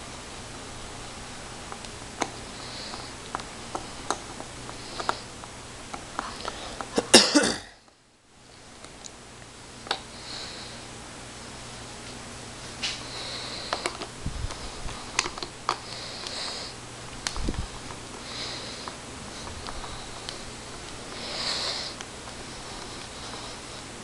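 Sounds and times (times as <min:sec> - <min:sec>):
steady hiss: 0:00.0 - 0:24.0
man coughing: 0:07.0 - 0:07.8
screwdriver clicks and ticks: 0:15.2 - 0:16.3.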